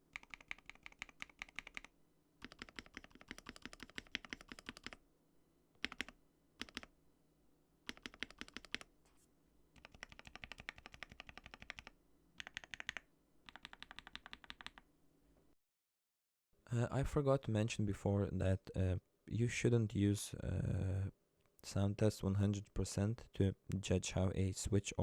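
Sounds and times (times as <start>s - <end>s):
mechanical keyboard typing: 0.1s - 5.0s, 5.8s - 6.9s, 7.9s - 8.9s, 9.8s - 14.8s.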